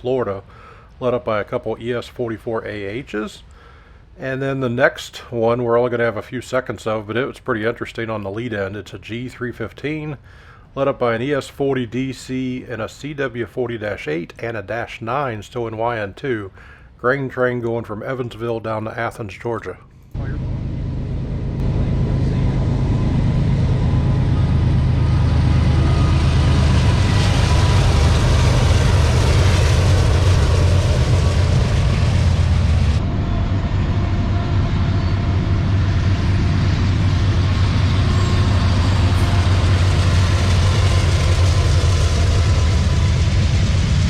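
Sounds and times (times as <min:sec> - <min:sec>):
diesel locomotive engine drone: 0:20.0 - 0:44.0.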